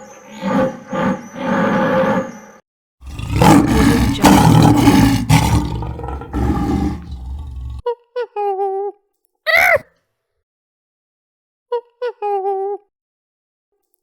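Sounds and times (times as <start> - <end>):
big cat roaring: 3.1 - 7.8
animal's short high calls: 9.5 - 9.8.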